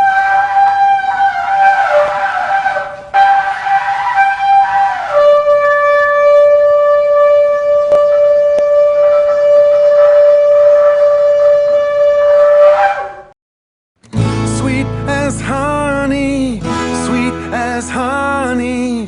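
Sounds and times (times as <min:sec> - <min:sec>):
ram's horn long call: 0:00.0 - 0:13.3.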